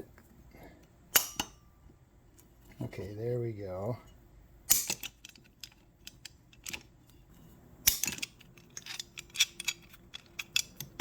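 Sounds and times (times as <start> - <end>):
sharp metal snap: 1.1 - 1.6, 4.7 - 5.2, 7.8 - 8.3
locking pliers clicking and rattling: 4.7 - 6.9, 7.9 - 11.0.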